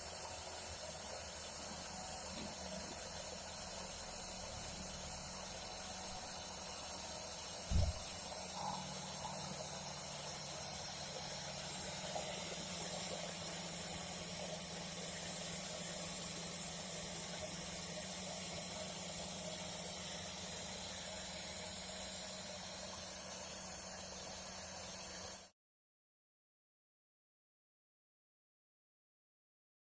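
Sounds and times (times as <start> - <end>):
router spindle motor hum: 0.7 - 25.0
bit hissing through foam: 7.4 - 14.4.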